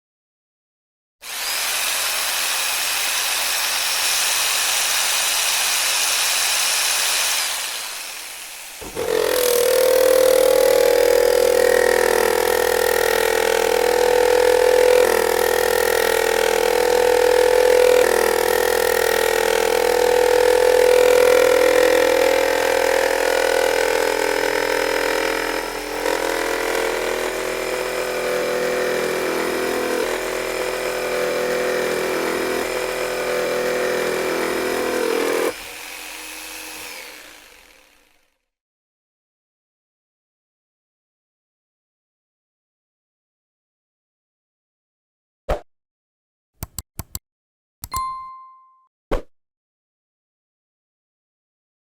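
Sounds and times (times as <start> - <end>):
jigsaw motor whine: 1.2 - 38.4.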